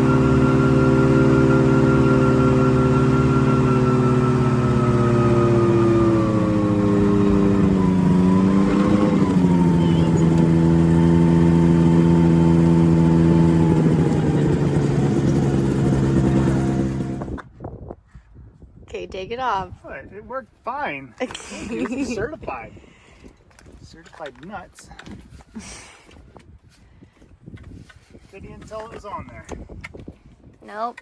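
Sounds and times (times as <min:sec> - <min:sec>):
aircraft engine and propeller: 0:00.0 - 0:17.5.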